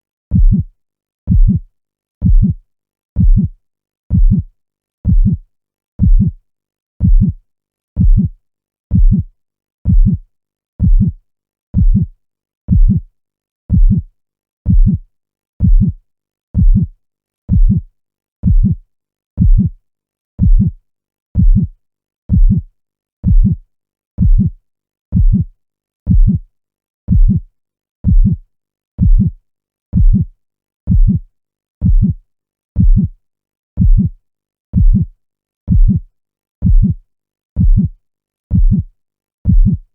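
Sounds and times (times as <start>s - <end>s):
heartbeat thumps: 0.3s - 0.7s, 1.3s - 1.6s, 2.2s - 2.6s, 3.2s - 3.5s, 4.1s - 4.5s, 5.1s - 5.4s, 6.0s - 6.4s, 7.0s - 7.4s, 8.0s - 8.3s, 8.9s - 9.3s, 9.9s - 10.2s, 10.8s - 11.2s, 11.8s - 12.1s, 12.7s - 13.0s, 13.7s - 14.0s, 14.7s - 15.0s, 15.6s - 16.0s, 16.6s - 16.9s, 17.5s - 17.8s, 18.4s - 18.8s, 19.4s - 19.7s, 20.4s - 20.8s, 21.4s - 21.7s, 22.3s - 22.6s, 23.2s - 23.6s, 24.2s - 24.5s, 25.2s - 25.5s, 26.1s - 26.4s, 27.1s - 27.4s, 28.0s - 28.4s, 29.0s - 29.3s, 30.0s - 30.3s, 30.9s - 31.2s, 31.8s - 32.2s, 32.8s - 33.1s, 33.8s - 34.1s, 34.8s - 35.1s, 35.7s - 36.0s, 36.6s - 37.0s, 37.6s - 37.9s, 38.5s - 38.8s, 39.5s - 39.8s.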